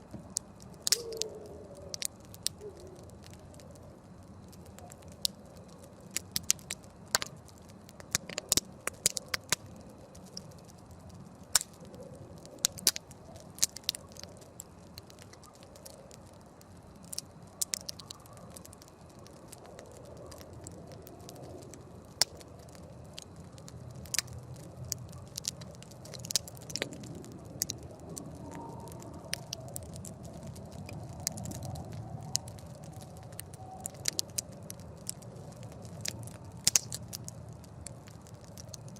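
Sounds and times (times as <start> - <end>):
campfire pops and snaps: 0.0 - 38.9
low steady burning: 0.0 - 38.9.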